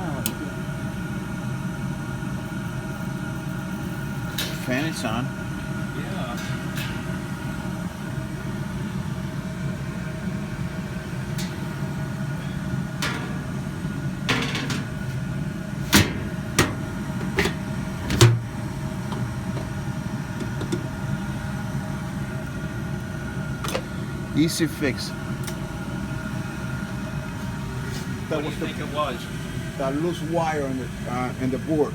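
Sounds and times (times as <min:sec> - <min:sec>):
furnace blower fan humming: 0:00.0 - 0:31.9.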